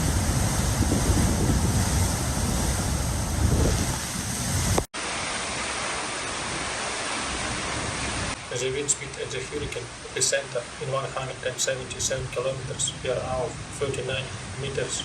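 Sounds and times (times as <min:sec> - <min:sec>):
wind buffeting microphone: 0:00.0 - 0:04.9
storm wind hiss: 0:00.0 - 0:15.0.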